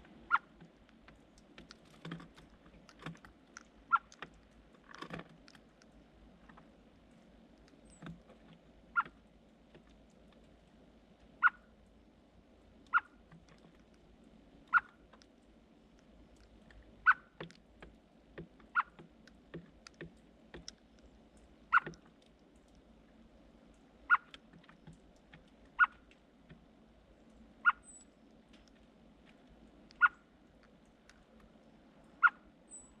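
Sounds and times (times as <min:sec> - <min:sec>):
birds making sharp clicks: 0:00.0 - 0:06.7, 0:12.8 - 0:22.9, 0:23.7 - 0:33.0.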